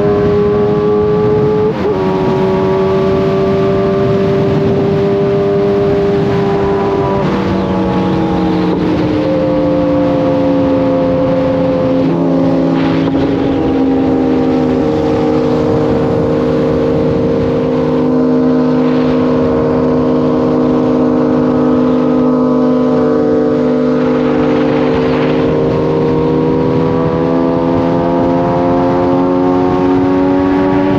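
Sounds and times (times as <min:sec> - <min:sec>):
motorcycle engine running: 0:00.0 - 0:30.9.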